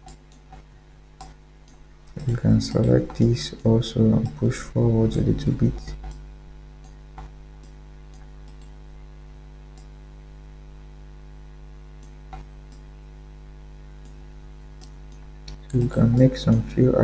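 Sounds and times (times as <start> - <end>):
electrical mains hum: 0.0 - 17.0
faint clicks: 1.2 - 4.6, 5.4 - 6.2, 6.8 - 8.8, 12.0 - 12.9, 14.8 - 16.7.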